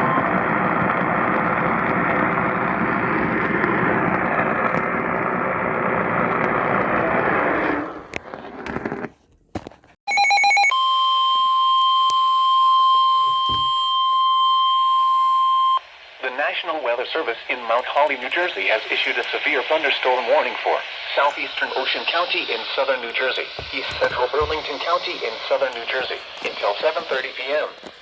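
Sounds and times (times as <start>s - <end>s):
radio receiver hiss: 15.8s - 28.0s.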